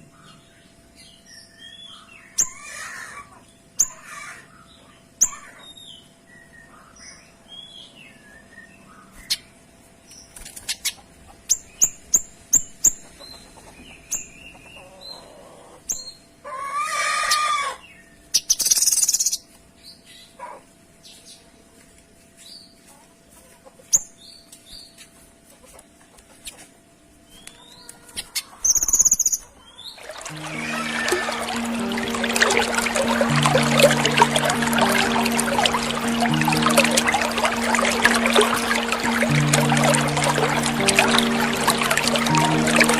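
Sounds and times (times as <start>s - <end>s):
songbird chirping: 28.7s - 42.9s.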